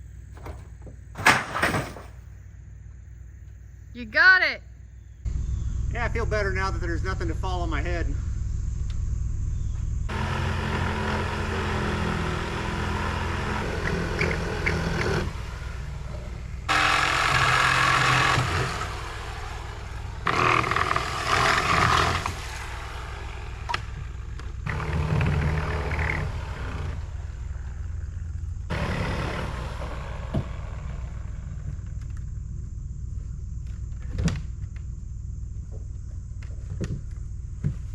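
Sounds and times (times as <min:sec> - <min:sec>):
low engine rumble: 0:04.7 - 0:37.9
reciprocating saw cutting wood: 0:10.1 - 0:27.8, 0:28.7 - 0:31.5.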